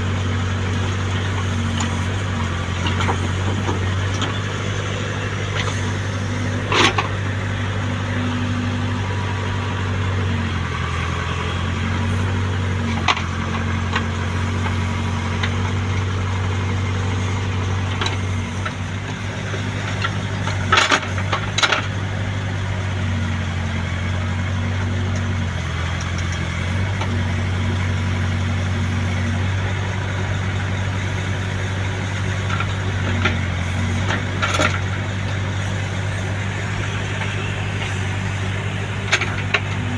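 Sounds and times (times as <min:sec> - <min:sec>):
heavy diesel engines idling: 0:00.0 - 0:39.9.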